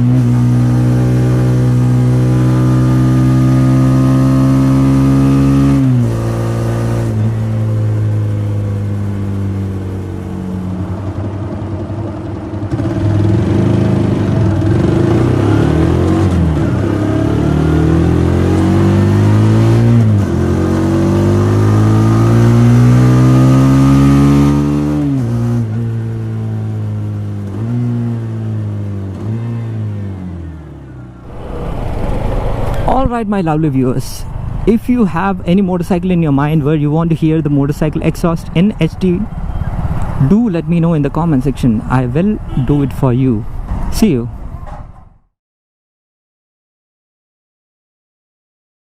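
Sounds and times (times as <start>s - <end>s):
motorcycle engine revving: 0.0s - 34.7s.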